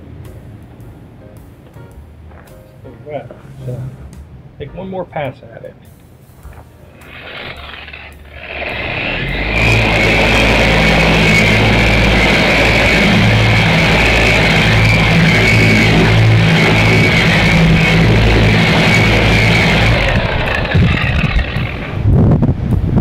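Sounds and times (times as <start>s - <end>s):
electric polisher whining: 6.9s - 22.1s.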